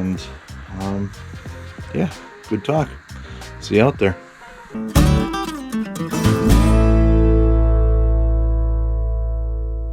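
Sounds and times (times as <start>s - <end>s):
acoustic guitar: 4.7s - 9.9s.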